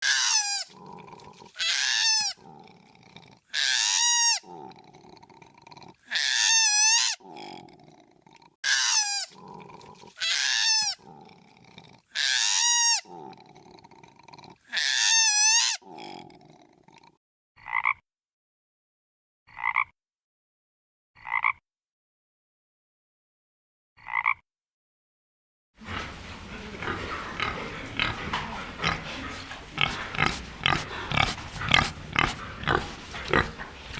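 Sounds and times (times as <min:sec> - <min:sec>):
animal calls: 0:00.0 - 0:07.6, 0:08.3 - 0:17.8, 0:25.8 - 0:33.9.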